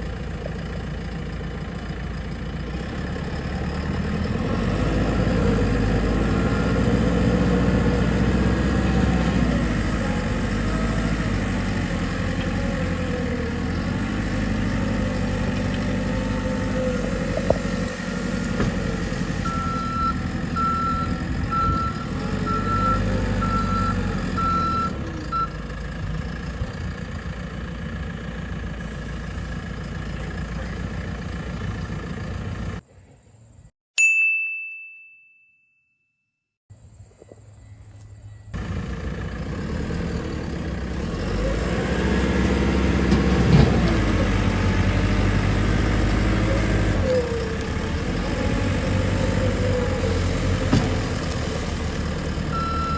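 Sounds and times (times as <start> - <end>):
diesel engine running: 0.0 - 32.8, 37.8 - 52.9
reversing alarm beeps: 19.4 - 25.5, 52.5 - 52.9.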